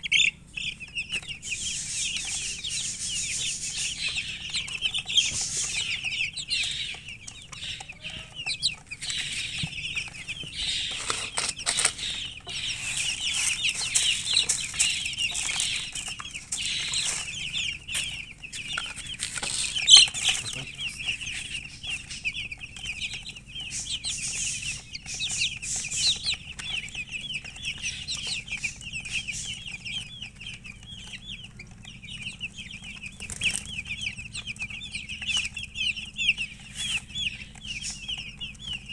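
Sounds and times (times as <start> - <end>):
loud chick call: 0.0 - 21.6
chicks peeping: 0.0 - 38.9
scuffling clicks: 3.7 - 23.9.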